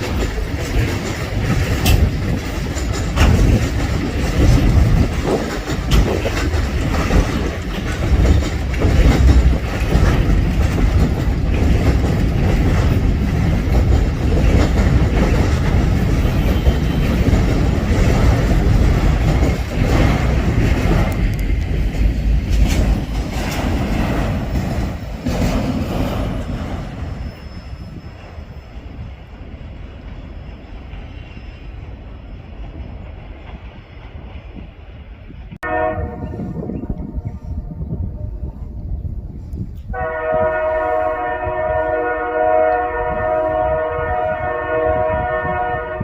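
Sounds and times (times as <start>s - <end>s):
train wheels clacking over rail joints: 0.0s - 28.6s
freight train rumble: 0.0s - 46.0s
wheel squeal: 27.0s - 28.9s.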